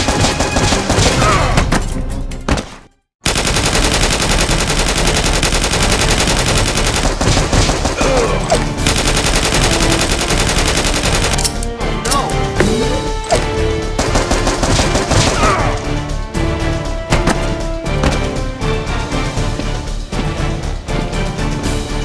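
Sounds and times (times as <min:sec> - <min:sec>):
action background music: 0:00.0 - 0:22.0
rapid automatic gunfire: 0:03.2 - 0:11.4, 0:14.0 - 0:15.5.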